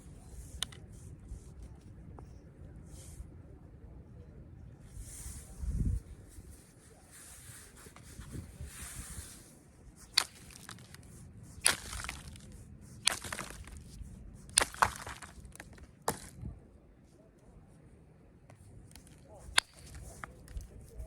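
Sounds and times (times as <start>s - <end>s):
soft scraping on stone: 5.0s - 16.4s
sharp clicks of flint flaking: 10.0s - 16.2s, 18.9s - 20.7s.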